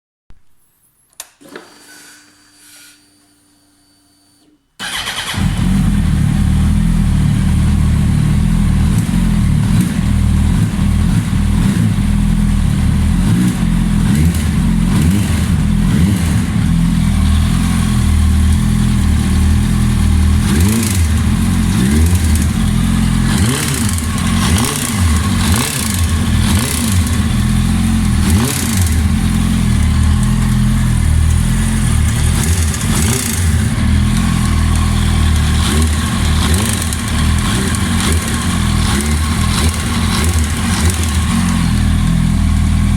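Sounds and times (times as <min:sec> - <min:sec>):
motorcycle engine running: 0:04.8 - 0:42.9.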